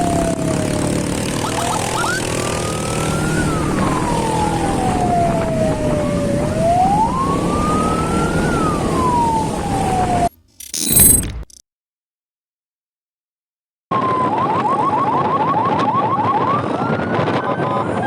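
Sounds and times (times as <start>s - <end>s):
emergency siren wailing: 1.4s - 10.3s.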